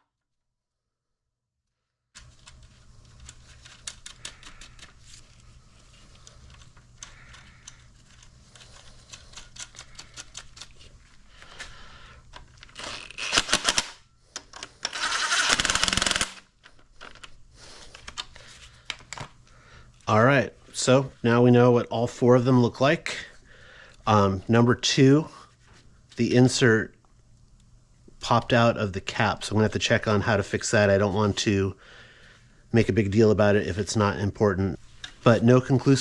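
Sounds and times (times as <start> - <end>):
low steady hum: 2.2 - 36.0
ratchet clicking: 12.8 - 14.0, 14.9 - 16.4.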